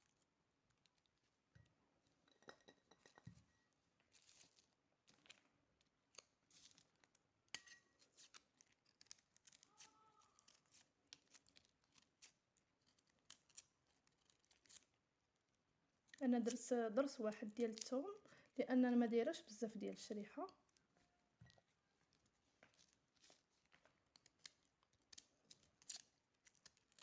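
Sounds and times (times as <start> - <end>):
garlic clove being cut: 25.1 - 27.0.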